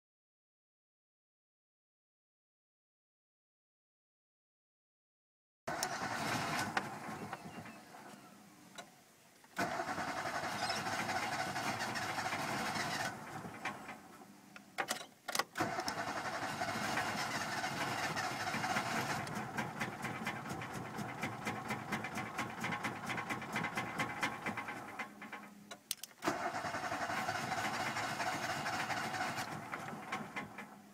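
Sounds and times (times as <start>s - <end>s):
car engine starting and running: 5.7s - 8.2s, 9.6s - 14.2s, 15.5s - 30.9s.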